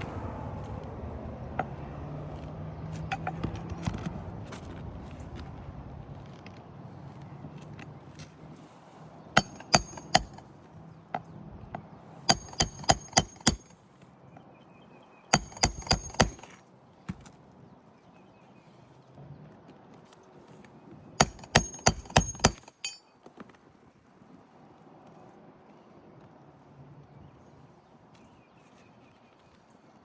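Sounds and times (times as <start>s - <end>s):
hammer striking nails: 3.1s - 4.0s, 9.4s - 10.4s, 12.3s - 13.7s, 15.3s - 17.2s, 21.2s - 23.0s.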